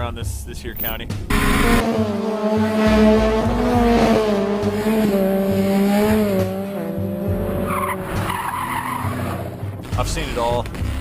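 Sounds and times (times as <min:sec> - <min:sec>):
motorcycle engine revving high: 0:01.3 - 0:09.7.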